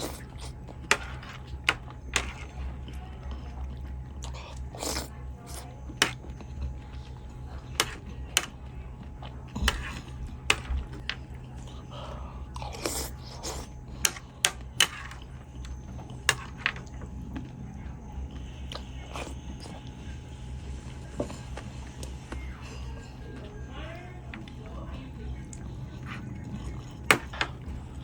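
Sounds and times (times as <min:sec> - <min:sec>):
person chewing and crunching food: 0:00.0 - 0:28.0
steady low hum: 0:00.0 - 0:28.0.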